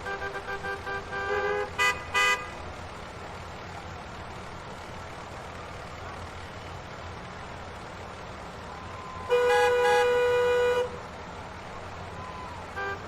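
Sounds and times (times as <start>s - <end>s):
car horns honking: 0.0s - 2.6s, 9.3s - 11.0s, 12.7s - 13.0s
traffic rumble: 0.0s - 13.0s.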